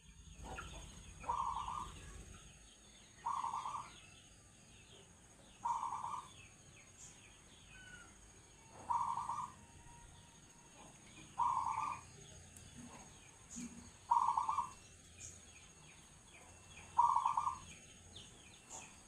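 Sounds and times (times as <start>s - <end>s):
faint small birds chirping: 0.0s - 19.0s
dove cooing: 0.4s - 2.2s, 3.2s - 4.0s, 5.6s - 6.3s, 8.7s - 9.9s, 10.8s - 12.1s, 13.5s - 14.8s, 16.9s - 17.8s.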